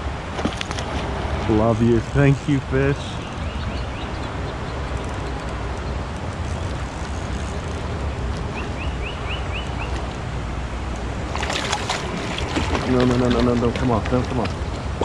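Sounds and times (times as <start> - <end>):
rushing outdoor noise: 0.0 - 15.0
rapid clicks and splashy noise: 11.0 - 14.9.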